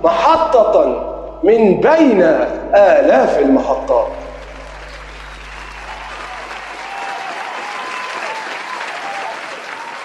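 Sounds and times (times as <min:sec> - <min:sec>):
audience cheering: 0:04.0 - 0:10.0
audience applauding: 0:04.1 - 0:10.0.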